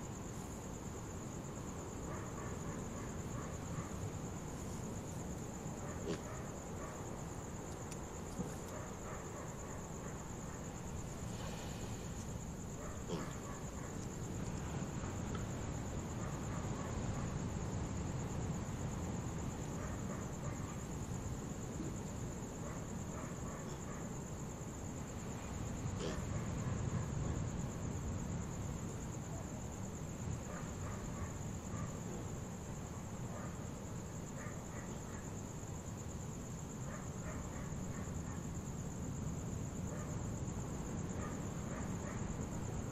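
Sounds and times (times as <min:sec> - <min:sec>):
crickets trilling: 0:00.0 - 0:42.9
faint animal calls: 0:05.7 - 0:07.0, 0:12.8 - 0:14.2, 0:25.9 - 0:27.4.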